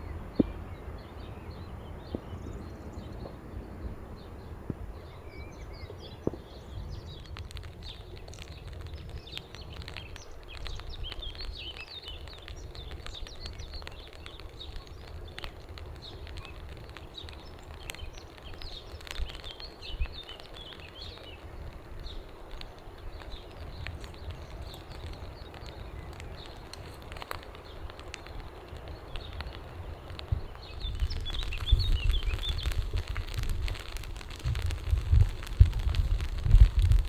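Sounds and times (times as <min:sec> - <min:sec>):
steady low rumble: 0:00.0 - 0:07.7, 0:30.1 - 0:37.0
small birds chirping and trilling: 0:00.0 - 0:37.0
light ticks: 0:07.1 - 0:37.0.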